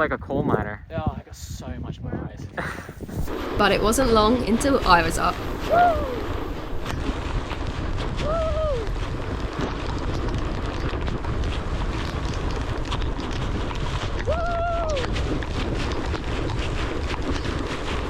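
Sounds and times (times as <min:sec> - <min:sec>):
wind rushing over microphone: 0:00.0 - 0:18.0
person whooping shout: 0:05.6 - 0:06.3, 0:08.2 - 0:08.9, 0:14.3 - 0:15.1.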